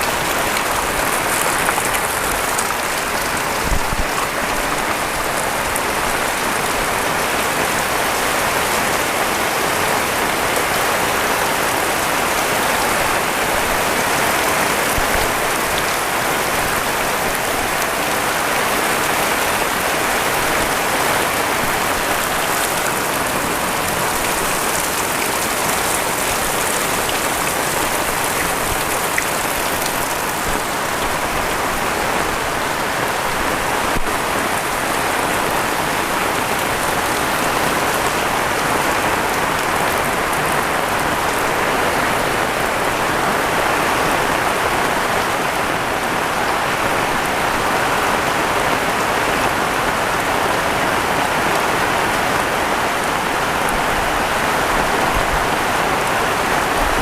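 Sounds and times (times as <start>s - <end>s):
heavy rain pattering: 0.0s - 57.0s.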